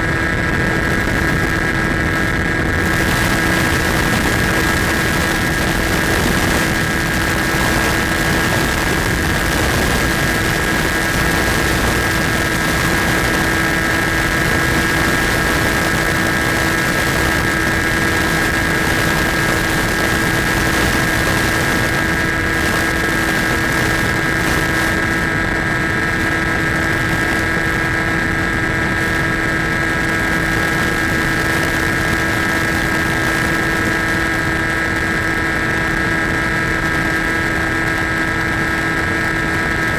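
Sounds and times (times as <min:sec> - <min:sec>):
model plane motor and propeller: 0:00.0 - 0:39.9
rushing air noise: 0:00.0 - 0:39.9.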